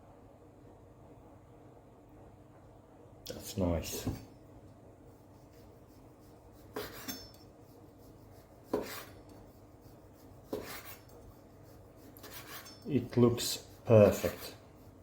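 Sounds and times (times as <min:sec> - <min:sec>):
knife slicing meat: 0:06.3 - 0:15.0.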